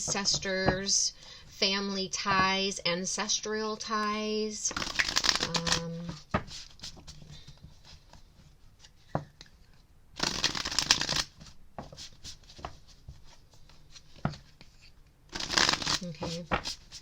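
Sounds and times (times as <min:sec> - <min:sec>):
cards being shuffled: 0:04.7 - 0:09.0, 0:10.2 - 0:17.0.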